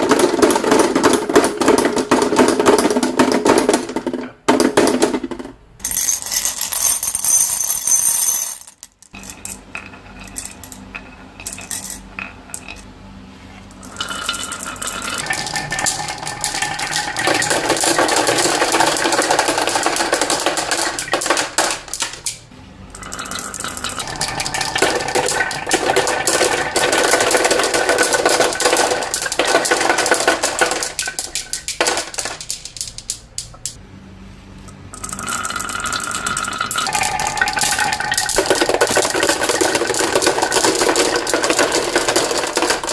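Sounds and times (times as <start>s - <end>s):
marbles rattling down a track: 5.8s - 12.8s, 13.8s - 22.3s, 23.0s - 33.7s, 35.0s - 42.9s.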